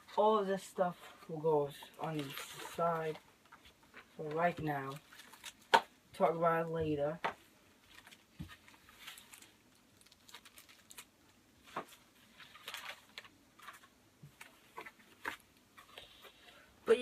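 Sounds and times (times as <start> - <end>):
packaging rustling: 1.9 - 5.9, 7.8 - 16.1.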